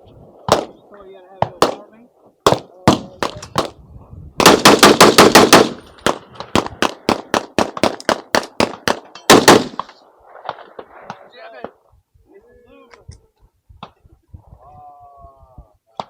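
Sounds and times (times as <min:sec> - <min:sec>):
rapid gunfire: 0:04.4 - 0:09.9.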